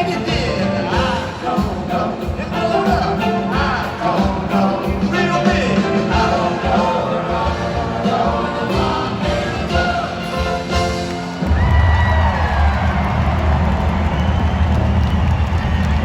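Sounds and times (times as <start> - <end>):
person singing: 0.0 - 11.1
live band playing: 0.0 - 14.0.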